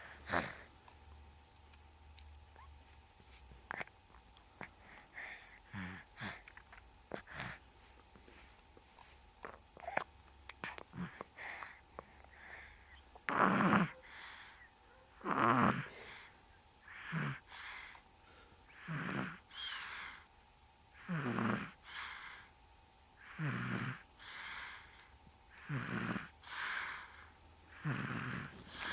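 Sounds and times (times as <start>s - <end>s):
quiet breathing: 0.0s - 1.0s, 2.9s - 20.3s, 21.7s - 28.9s
person snoring: 13.3s - 13.9s, 15.2s - 16.3s, 16.9s - 17.7s, 18.8s - 20.2s, 21.0s - 22.5s, 23.2s - 24.9s, 25.6s - 28.9s.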